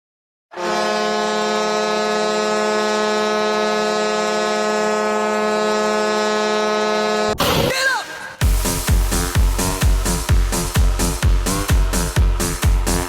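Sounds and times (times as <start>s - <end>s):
hockey goal horn blast: 0.5s - 8.0s.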